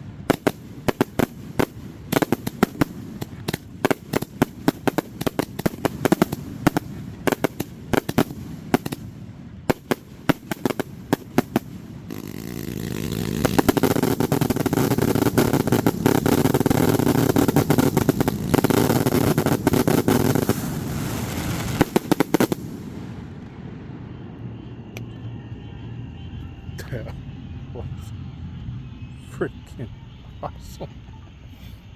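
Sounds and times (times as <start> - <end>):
fireworks crackle: 0.0 - 25.2
fireworks exploding: 0.0 - 25.3.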